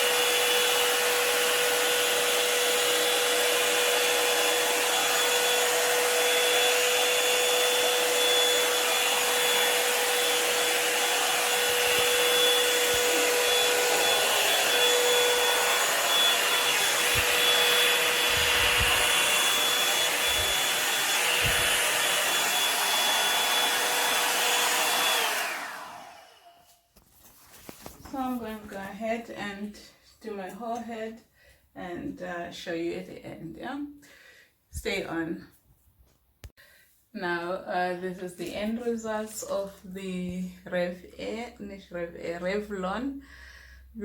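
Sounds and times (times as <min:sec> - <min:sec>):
hair dryer brush running: 0:00.0 - 0:26.8.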